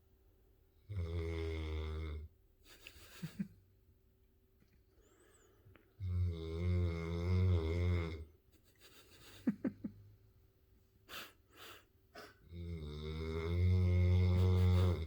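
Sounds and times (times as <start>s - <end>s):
puppy snoring: 12.5s - 15.0s.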